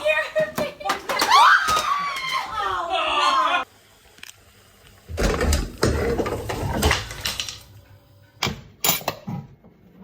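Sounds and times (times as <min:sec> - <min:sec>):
kitchen clattering and rustling: 0:05.1 - 0:07.8.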